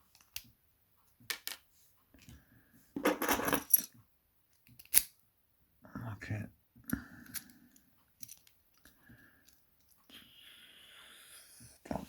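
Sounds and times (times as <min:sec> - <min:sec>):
metal lock parts clicking: 0:04.6 - 0:05.2, 0:08.2 - 0:08.5.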